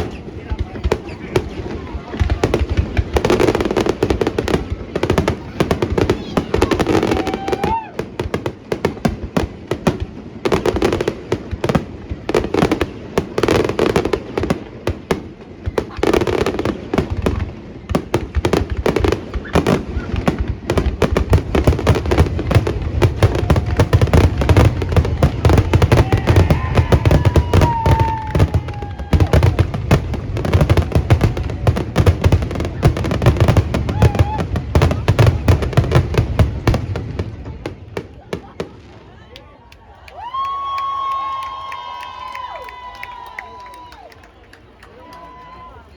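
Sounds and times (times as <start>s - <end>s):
fireworks bursting: 0.0s - 39.6s
falling firework whistle: 5.6s - 8.0s, 23.0s - 29.9s, 33.8s - 35.0s.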